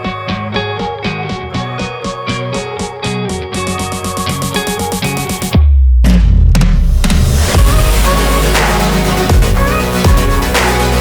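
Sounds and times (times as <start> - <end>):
fast plucked guitar music: 0.0 - 5.6.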